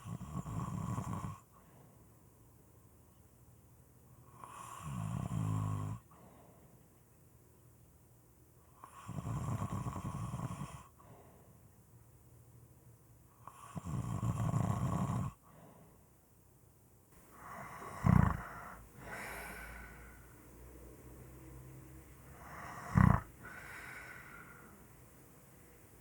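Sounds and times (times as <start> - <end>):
person snoring: 0.0 - 1.4, 4.3 - 6.0, 13.5 - 15.4, 17.3 - 20.3, 22.2 - 24.8.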